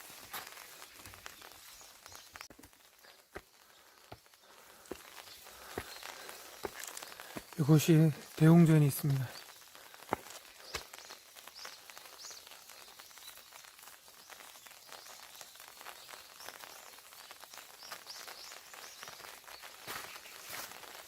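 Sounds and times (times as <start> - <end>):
footsteps: 0.0 - 9.4, 10.0 - 11.0, 19.8 - 20.9
small birds chirping: 0.0 - 21.0.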